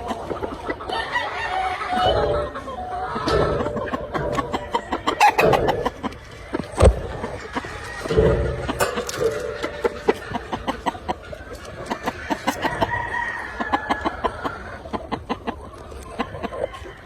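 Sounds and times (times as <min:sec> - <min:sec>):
chickens clucking: 0:00.0 - 0:17.0
rooster crowing: 0:00.9 - 0:02.4, 0:12.3 - 0:14.2.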